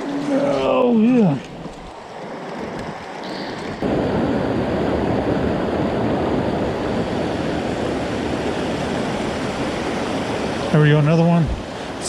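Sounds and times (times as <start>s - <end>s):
mountain stream rushing: 0.0s - 12.0s.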